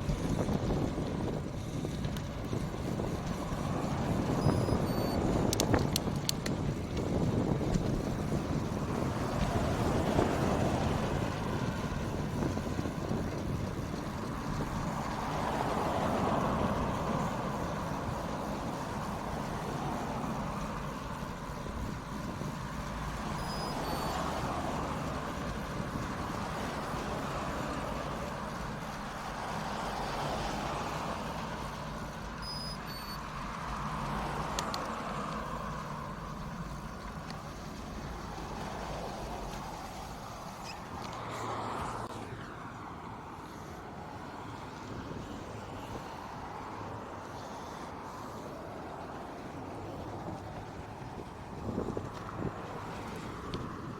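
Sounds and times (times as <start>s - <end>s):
wind and road noise: 0.0s - 53.9s
two-note electronic beeps: 4.4s - 5.2s, 23.4s - 24.1s, 32.4s - 33.2s.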